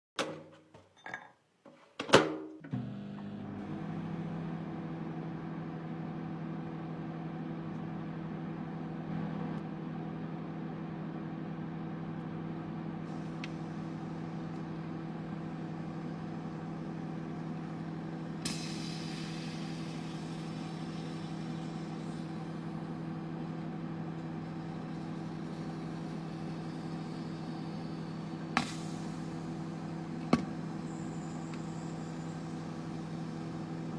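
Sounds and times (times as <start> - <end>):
microwave oven humming: 2.6 - 33.9
hiss: 13.1 - 33.9.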